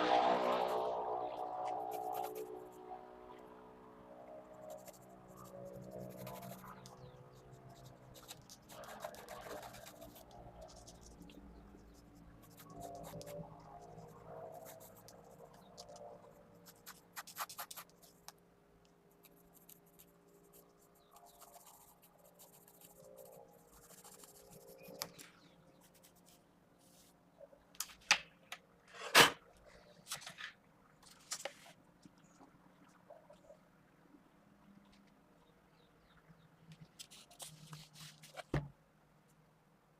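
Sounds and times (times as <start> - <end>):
pencil scratching on paper: 1.7 - 2.7, 4.7 - 13.4, 14.5 - 15.7, 16.6 - 18.2, 19.2 - 25.1.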